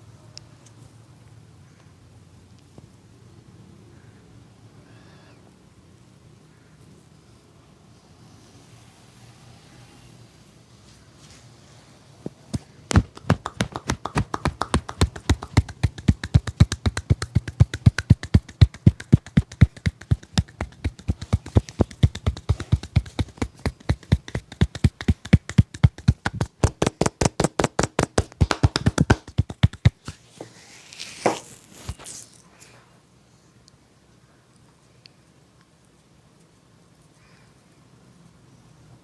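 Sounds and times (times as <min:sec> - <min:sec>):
hands slapping in massage: 0:12.5 - 0:32.2.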